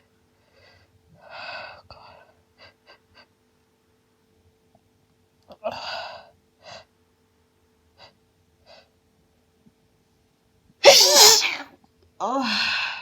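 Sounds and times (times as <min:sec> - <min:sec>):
woman gasping breath: 0:10.8 - 0:11.6
woman sniffing: 0:10.8 - 0:11.6
woman sneezing: 0:10.8 - 0:11.7.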